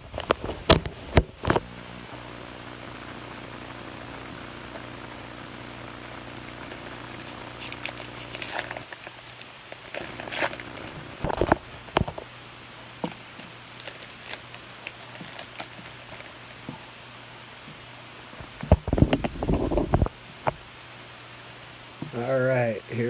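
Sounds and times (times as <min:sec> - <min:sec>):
pack wrapper crinkling: 0:06.2 - 0:12.2, 0:13.0 - 0:17.6.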